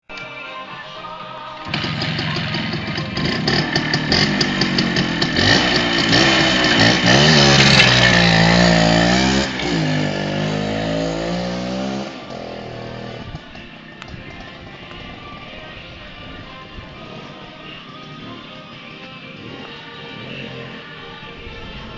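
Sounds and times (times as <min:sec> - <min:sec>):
motorcycle engine revving: 0:01.7 - 0:13.7, 0:19.3 - 0:21.0.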